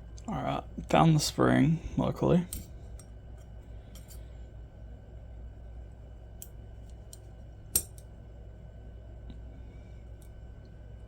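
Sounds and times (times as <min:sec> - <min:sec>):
steady low hum: 0:00.0 - 0:11.0
metal knife parts clicking: 0:07.1 - 0:08.0.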